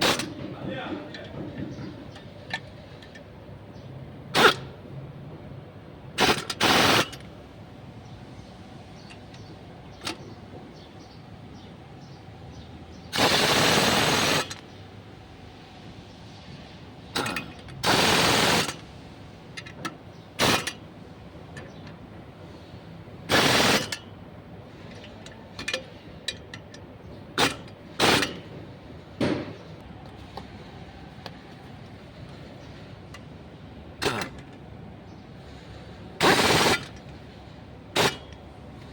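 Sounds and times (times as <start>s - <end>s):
impact wrench rattling: 0.0s - 0.5s, 6.2s - 7.3s, 17.2s - 18.9s, 19.5s - 20.9s, 23.3s - 26.8s, 27.4s - 29.6s, 34.0s - 34.7s, 36.2s - 37.2s, 38.0s - 38.4s.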